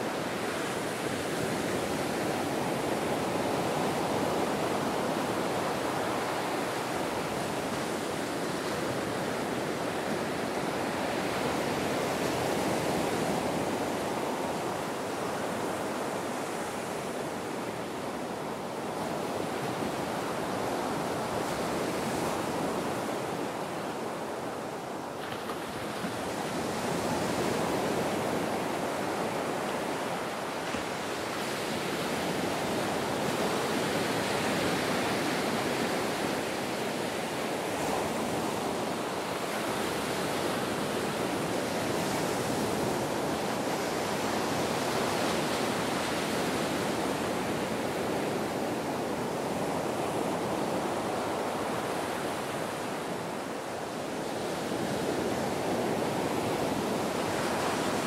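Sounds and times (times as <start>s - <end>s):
ocean waves breaking on beach: 0.0s - 58.0s.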